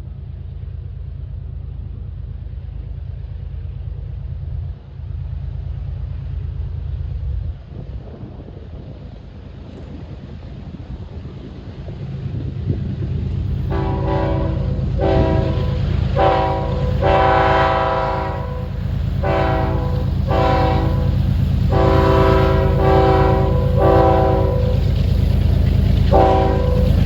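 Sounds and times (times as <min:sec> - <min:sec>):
low locomotive rumble: 0:00.0 - 0:27.0
locomotive air horn blasts: 0:13.7 - 0:25.0, 0:26.1 - 0:27.0.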